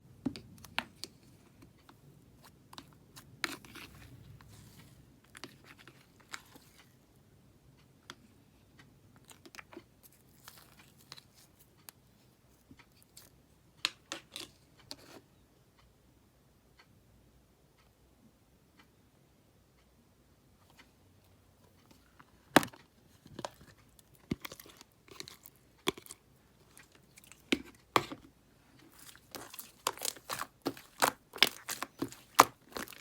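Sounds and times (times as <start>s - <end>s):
slime bubbles crackling and popping: 28.9s - 33.0s.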